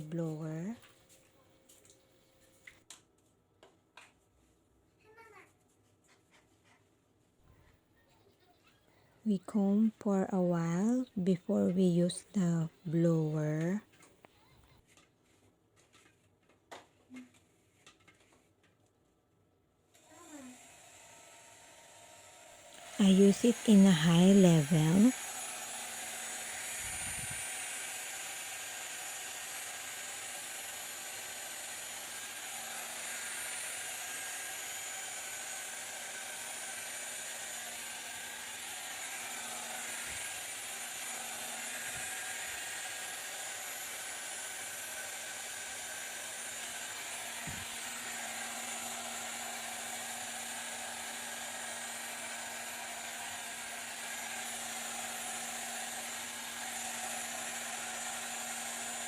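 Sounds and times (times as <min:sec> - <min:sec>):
hair dryer running: 0:20.2 - 0:59.0.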